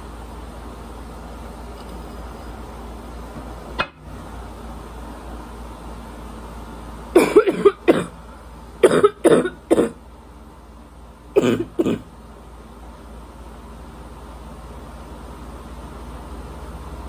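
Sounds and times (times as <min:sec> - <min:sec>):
woman's barking cough: 0:07.2 - 0:08.1, 0:08.8 - 0:10.0, 0:11.4 - 0:12.1.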